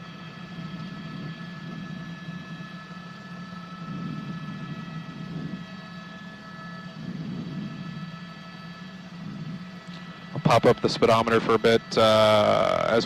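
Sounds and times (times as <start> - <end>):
helicopter engine and rotor drone: 0.0 - 13.0
high whine: 0.0 - 13.0.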